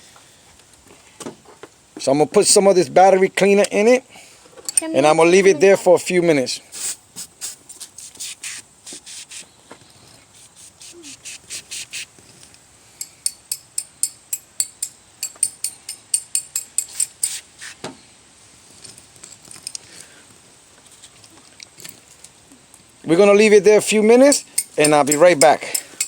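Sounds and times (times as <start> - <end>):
spray can hissing bursts: 6.7 - 9.5, 10.4 - 12.2.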